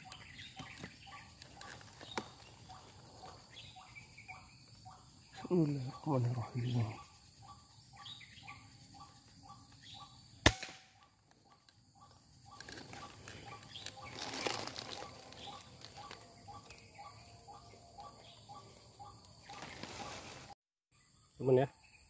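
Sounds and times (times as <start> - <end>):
air rifle shot: 10.4 - 11.0
rustling flapping noise: 19.4 - 20.6.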